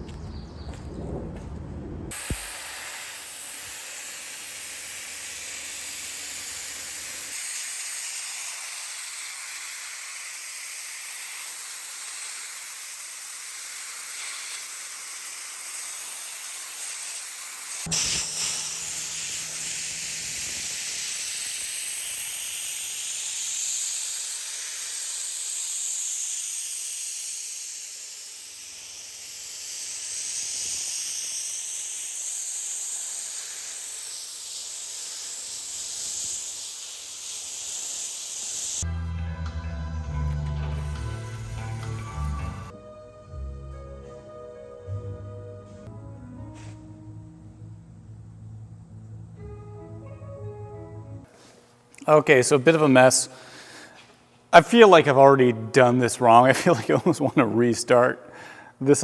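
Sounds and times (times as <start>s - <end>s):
sandblaster nozzle hissing: 2.1s - 38.9s, 40.6s - 42.7s.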